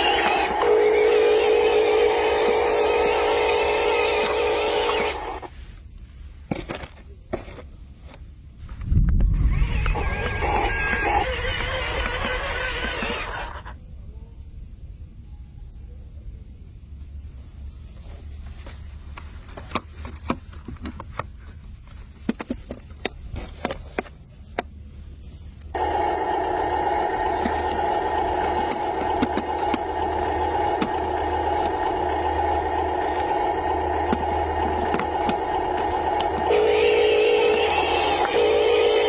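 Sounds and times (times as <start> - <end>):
loud steady machine noise: 0.0 - 5.5, 9.3 - 13.8, 25.8 - 39.0
low engine rumble: 24.2 - 39.0.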